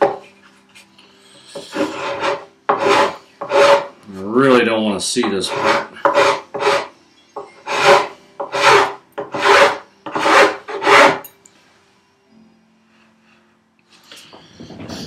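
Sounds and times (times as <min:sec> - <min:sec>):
rasp filing wood: 0:01.6 - 0:04.0, 0:05.2 - 0:06.9, 0:07.6 - 0:11.2.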